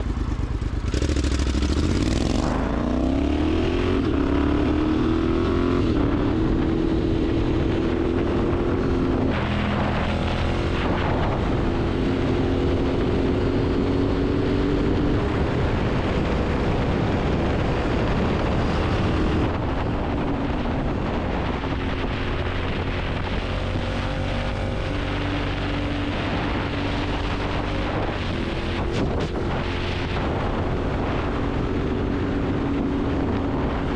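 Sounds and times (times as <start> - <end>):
vehicle engine running: 0.0 - 4.6
road and wind noise: 0.0 - 33.9.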